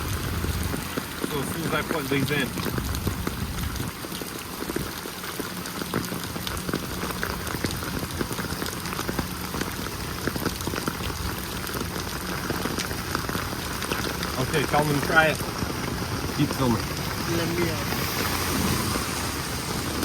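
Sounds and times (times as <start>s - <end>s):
rain drops ticking on surfaces: 0.0s - 20.0s.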